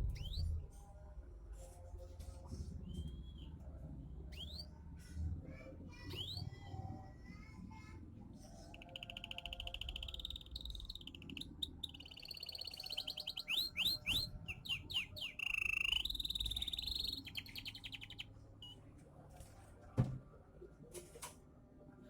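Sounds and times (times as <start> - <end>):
songbird singing trills: 8.6 - 18.8.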